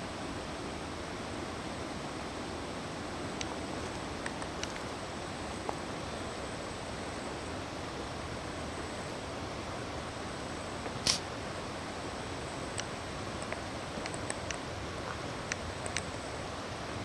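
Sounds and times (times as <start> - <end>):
river water rushing: 0.0 - 17.0
faint ticks: 3.4 - 3.6, 12.7 - 16.2
sharp click: 11.0 - 11.2.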